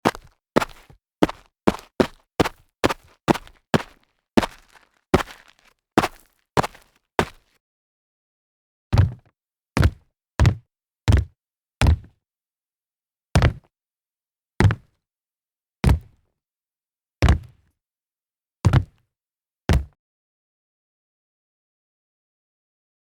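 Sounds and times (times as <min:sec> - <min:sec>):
sneakers landing with thuds: 0:00.0 - 0:07.4.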